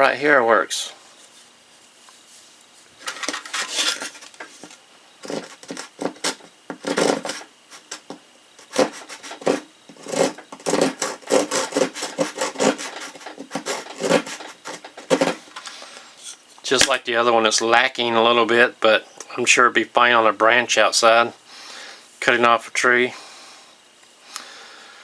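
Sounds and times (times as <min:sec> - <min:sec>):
small saw rasping: 0:03.5 - 0:15.5.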